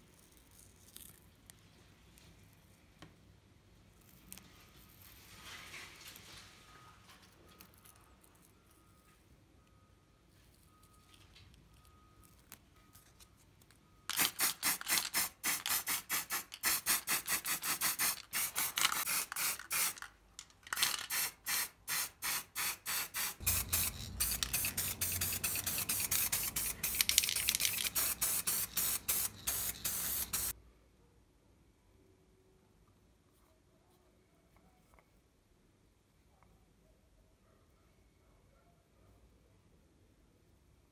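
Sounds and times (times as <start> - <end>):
short hissing sprays: 21.1 - 30.5.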